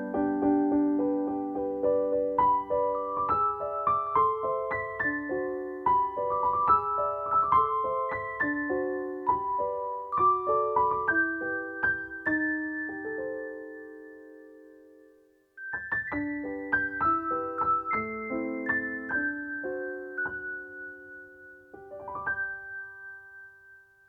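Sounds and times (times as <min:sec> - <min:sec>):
gentle piano melody: 0:00.0 - 0:24.0.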